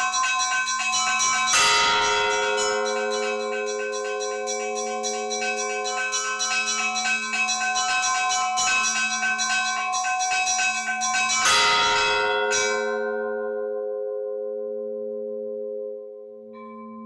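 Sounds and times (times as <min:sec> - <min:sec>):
heavy bell strike: 0:00.0 - 0:13.5
church bells pealing: 0:00.0 - 0:14.5
hum of large bells: 0:00.0 - 0:17.0.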